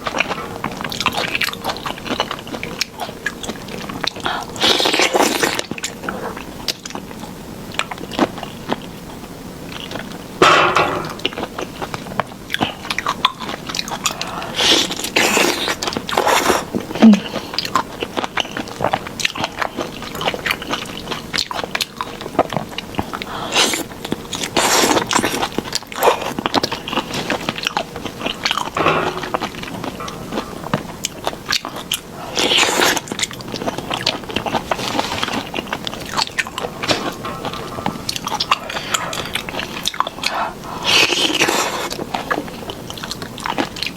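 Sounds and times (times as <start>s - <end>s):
person biting and chewing: 10.8s - 43.9s.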